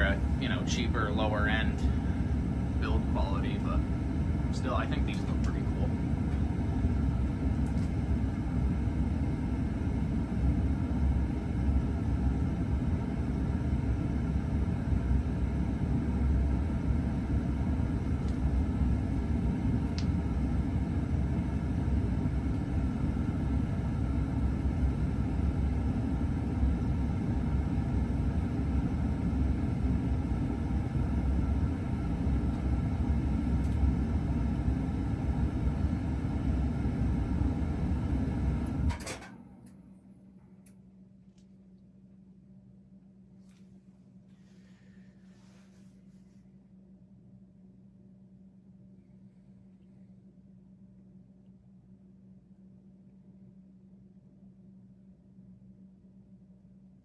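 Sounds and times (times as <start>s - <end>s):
ceiling fan coasting down: 0.0s - 40.9s.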